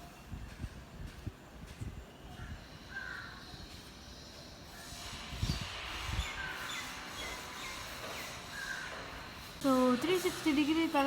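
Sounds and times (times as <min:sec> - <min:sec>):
small birds chirping: 0:05.4 - 0:11.0.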